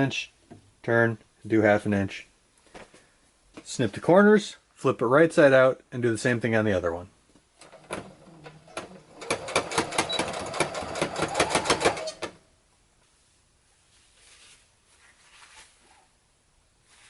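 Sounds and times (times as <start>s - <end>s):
sewing machine stitching: 7.6s - 12.4s
fabric handling: 13.0s - 16.2s.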